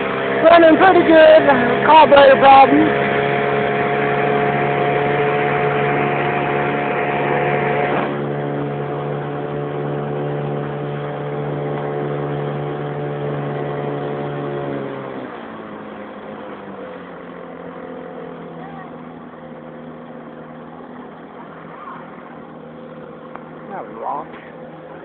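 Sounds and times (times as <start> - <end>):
outboard motor running: 0.0 - 25.0.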